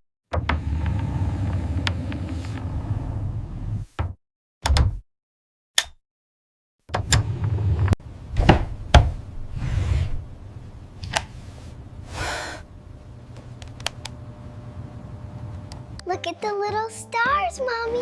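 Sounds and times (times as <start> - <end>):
steady low hum: 7.2 - 16.0
wooden knocks and thuds: 8.4 - 9.2.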